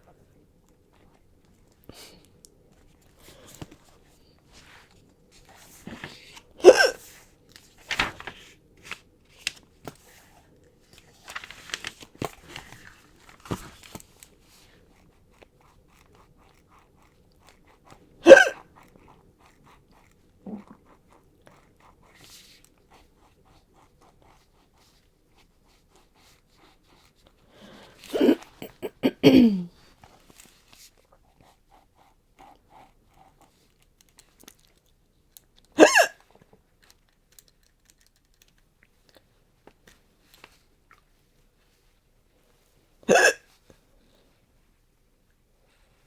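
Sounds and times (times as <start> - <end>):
woman hiccuping: 6.6 - 7.0, 18.2 - 18.6, 28.1 - 29.7, 35.8 - 36.2, 43.1 - 43.4.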